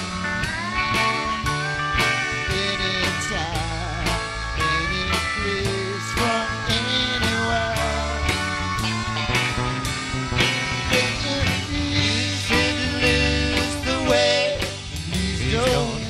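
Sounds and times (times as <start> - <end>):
bass guitar: 0.0 - 16.0
electric guitars: 0.0 - 16.0
pedal steel guitar: 0.0 - 16.0
steady drumbeat: 0.0 - 16.0.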